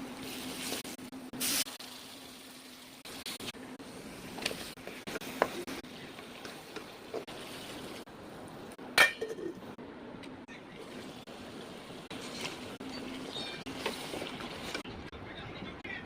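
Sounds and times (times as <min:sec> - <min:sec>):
utensils clinking against cookware: 0:09.0 - 0:09.6.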